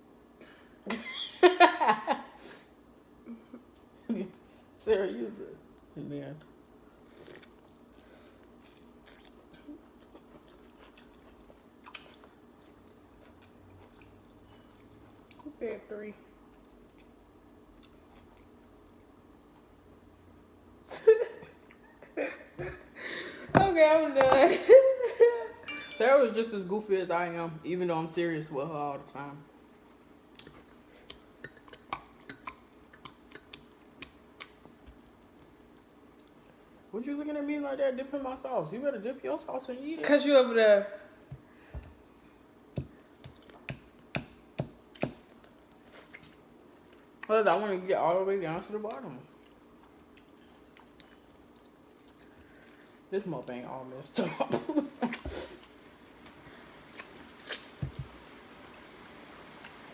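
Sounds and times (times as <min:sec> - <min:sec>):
faint chewing: 0:05.8 - 0:15.5, 0:48.9 - 0:53.0
short ringing ping: 0:25.6 - 0:26.3.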